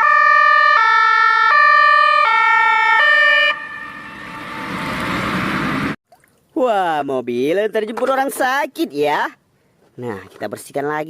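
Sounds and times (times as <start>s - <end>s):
two-tone ambulance siren: 0.0s - 6.0s.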